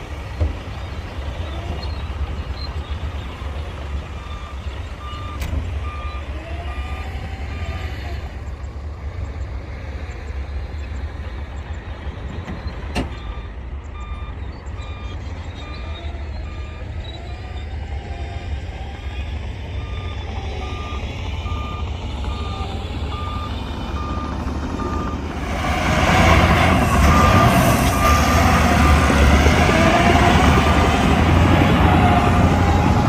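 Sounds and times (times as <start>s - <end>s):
diesel machine running: 0.0s - 33.0s
reversing alarm beeping: 4.2s - 7.9s, 13.1s - 33.0s.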